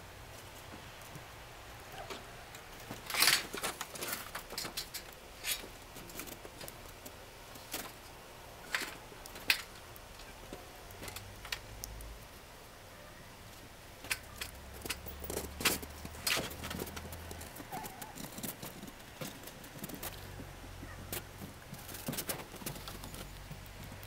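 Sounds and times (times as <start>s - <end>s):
cat footsteps crunching snow: 13.6s - 24.0s.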